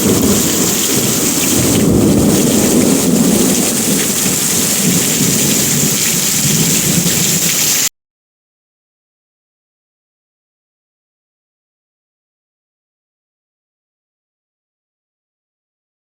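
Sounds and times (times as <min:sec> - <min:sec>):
low rumble of thunder: 0:00.0 - 0:07.6
heavy rain pouring: 0:00.0 - 0:07.9.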